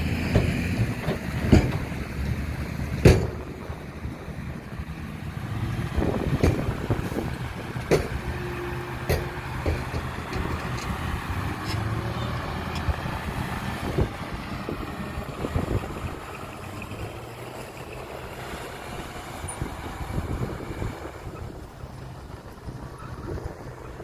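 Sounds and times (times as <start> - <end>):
heavy machinery diesel engine: 0.0 - 24.0
knocks and clanks: 0.2 - 2.0, 3.0 - 3.6, 6.3 - 7.0, 7.7 - 13.0.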